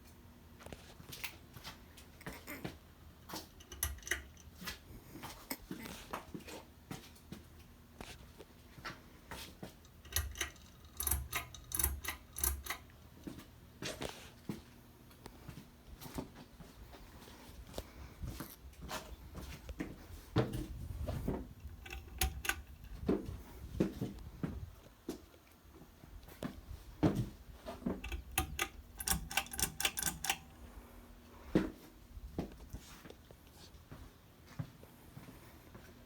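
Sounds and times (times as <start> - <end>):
ceiling fans humming: 0.0 - 36.0
light clicks and taps: 19.7 - 23.3, 26.4 - 30.6.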